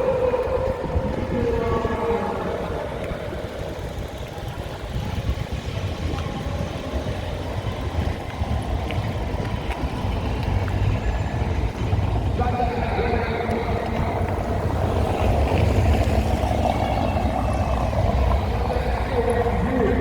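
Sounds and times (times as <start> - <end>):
engine rumble: 0.0 - 20.0
outdoor noise: 0.0 - 20.0.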